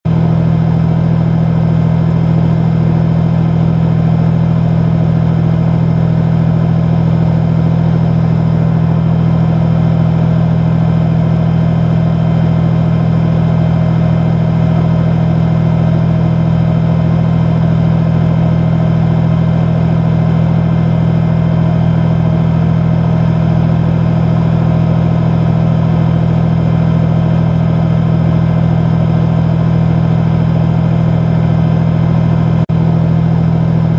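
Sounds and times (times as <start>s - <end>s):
diesel engine idling: 0.1s - 33.9s.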